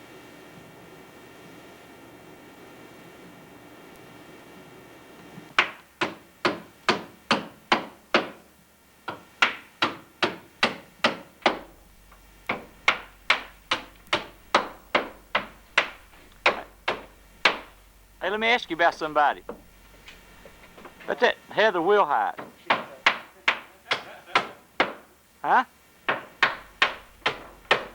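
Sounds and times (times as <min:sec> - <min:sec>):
hammer blows: 0:11.0 - 0:21.1.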